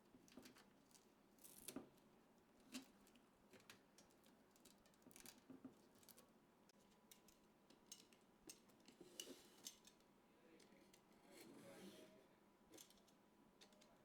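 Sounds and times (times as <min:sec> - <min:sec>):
small clicks of hardware handled: 0:02.7 - 0:11.0, 0:12.7 - 0:14.0.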